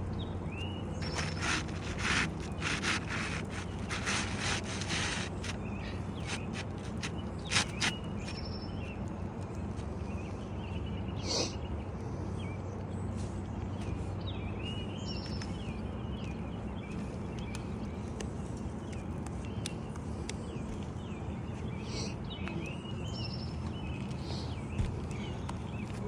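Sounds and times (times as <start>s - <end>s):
birds chirping: 0.0s - 26.0s
steady low hum: 0.0s - 26.0s
brief scrape: 1.0s - 5.6s, 6.2s - 8.0s.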